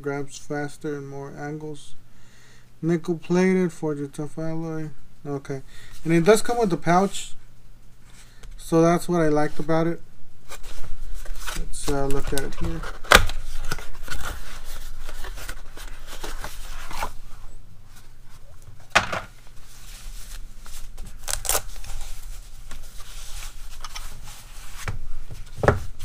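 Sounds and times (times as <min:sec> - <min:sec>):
rustling and rubbing of pouch: 0:10.4 - 0:26.0.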